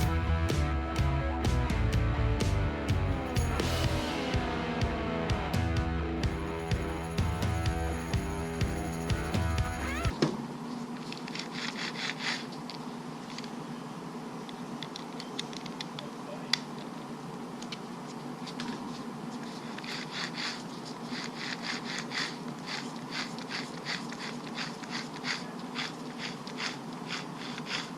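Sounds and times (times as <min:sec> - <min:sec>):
steady low hum: 0:00.0 - 0:10.9
small clicks and rustles: 0:10.7 - 0:13.6, 0:14.4 - 0:17.0, 0:17.6 - 0:27.9.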